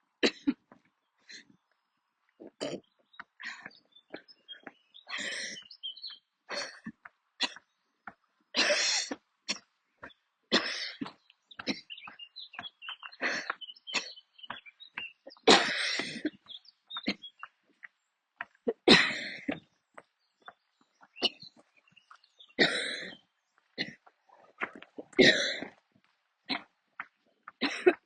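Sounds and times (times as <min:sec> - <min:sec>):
woman coughing: 0:00.2 - 0:00.6, 0:08.6 - 0:09.6, 0:15.4 - 0:16.4, 0:18.7 - 0:19.6, 0:22.6 - 0:23.2, 0:25.0 - 0:25.7, 0:27.6 - 0:28.0.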